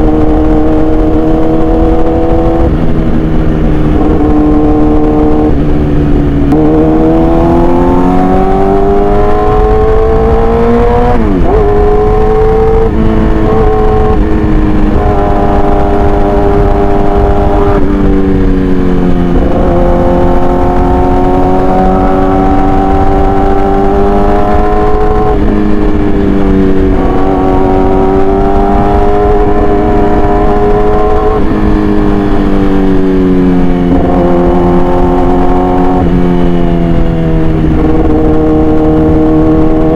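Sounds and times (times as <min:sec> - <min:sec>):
motorcycle engine running loud: 0:00.0 - 0:39.9.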